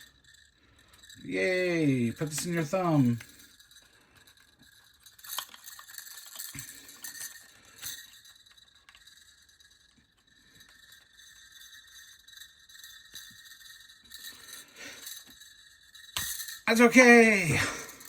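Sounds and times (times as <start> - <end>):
plastic toy parts clicking: 2.1 - 3.5, 4.3 - 9.1.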